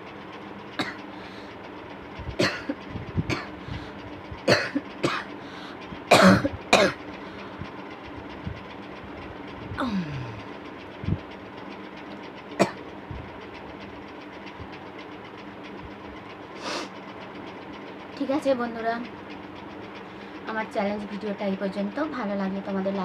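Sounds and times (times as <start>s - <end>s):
electric fan humming: 0.0s - 23.0s
person coughing hard: 0.8s - 1.0s, 2.4s - 3.5s, 4.5s - 5.3s, 6.1s - 7.0s, 9.8s - 10.3s
person groaning: 9.8s - 10.4s.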